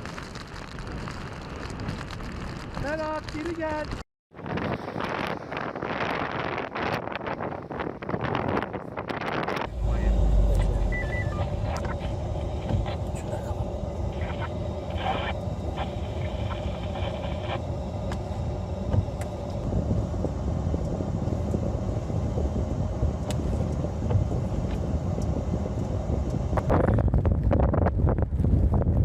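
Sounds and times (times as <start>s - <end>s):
wind buffeting microphone: 1.8s - 29.0s
low outdoor rumble: 9.4s - 29.0s.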